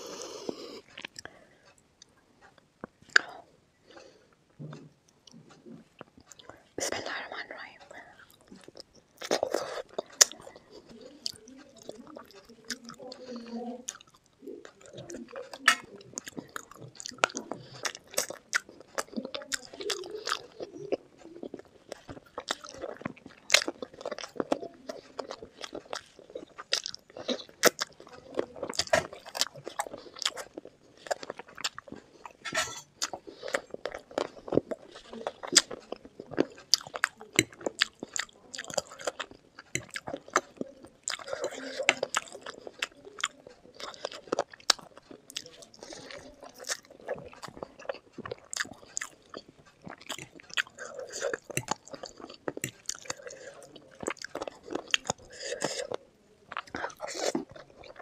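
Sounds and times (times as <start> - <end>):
close chewing and crunching: 0.0 - 58.0
wet mouth sounds: 28.6 - 58.0.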